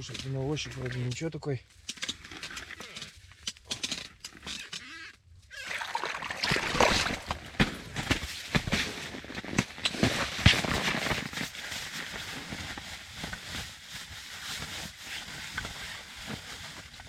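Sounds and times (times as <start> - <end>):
fish being handled: 5.6 - 7.7.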